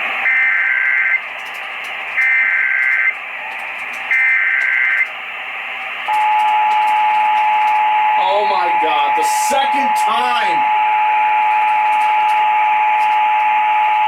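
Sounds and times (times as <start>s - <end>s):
radio static hiss: 0.0s - 14.0s
screeching digital data tones: 0.3s - 1.2s, 2.2s - 3.2s, 4.1s - 5.1s, 6.1s - 14.0s
two-tone attention signal: 6.1s - 14.0s.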